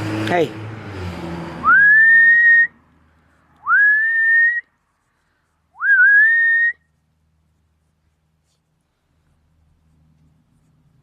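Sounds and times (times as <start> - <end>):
person whistling: 1.6 - 2.7, 3.6 - 4.7, 5.8 - 6.9.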